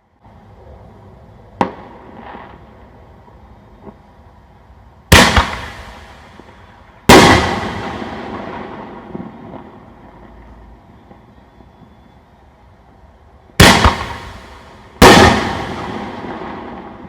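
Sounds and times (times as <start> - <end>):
firework shells booming: 5.1 - 9.8, 13.6 - 17.0.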